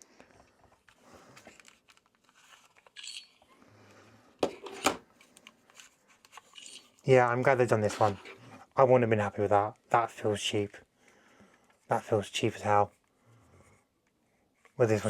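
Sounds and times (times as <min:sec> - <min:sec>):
plastic toy rattling: 0:02.4 - 0:03.5, 0:06.3 - 0:07.0.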